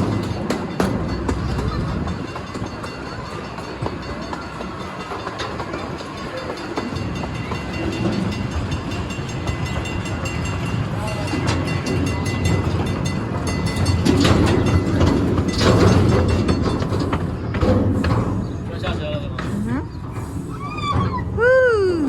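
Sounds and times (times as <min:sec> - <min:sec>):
train rumbling: 0:00.0 - 0:22.0
wheels clicking over rails: 0:00.0 - 0:22.0.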